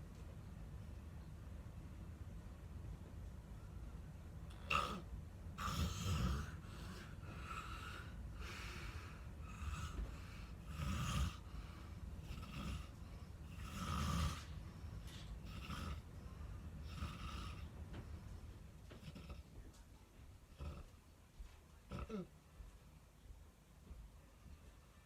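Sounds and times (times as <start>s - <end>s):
quiet breaths: 0.0s - 25.0s
person snoring: 4.5s - 5.0s, 5.6s - 10.0s, 10.6s - 11.5s, 12.2s - 12.9s, 13.5s - 14.5s.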